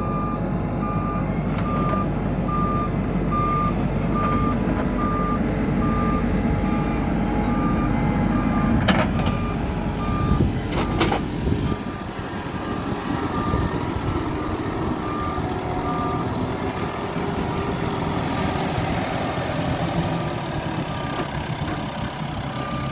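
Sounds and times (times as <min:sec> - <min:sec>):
reversing alarm beeping: 0:00.0 - 0:19.4, 0:22.6 - 0:22.9
diesel engine working: 0:00.0 - 0:22.9.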